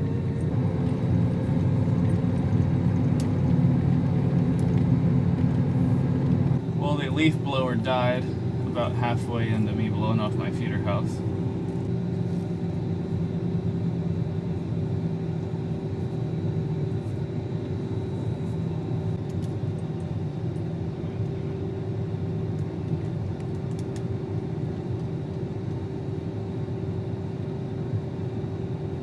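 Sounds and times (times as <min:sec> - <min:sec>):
engine droning: 0:00.0 - 0:19.5.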